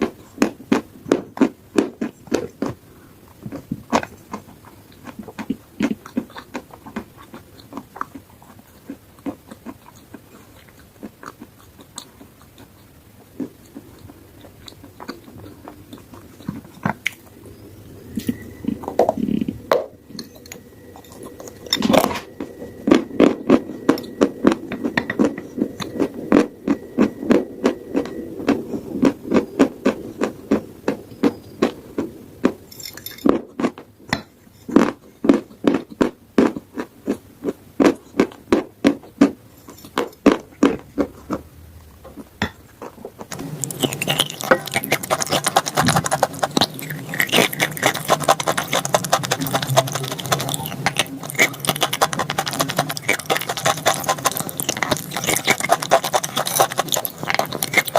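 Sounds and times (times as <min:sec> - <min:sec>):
chalk crunching while chewing: 0:00.0 - 0:17.4, 0:42.2 - 0:57.9.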